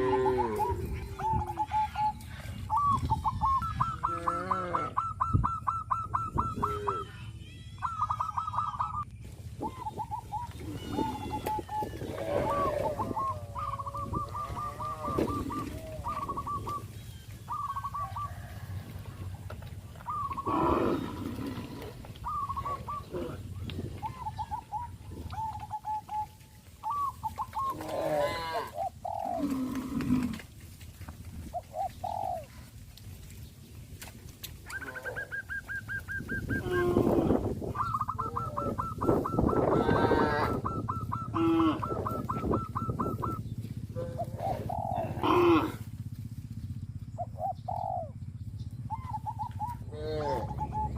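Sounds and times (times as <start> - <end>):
cows mooing: 0.0 - 2.5, 3.8 - 5.1, 10.5 - 16.7, 20.3 - 23.6, 27.6 - 30.6, 36.5 - 37.6, 38.6 - 43.3, 43.9 - 46.0, 49.8 - 50.9
birds calling: 0.0 - 50.9
doves cooing: 0.0 - 50.9.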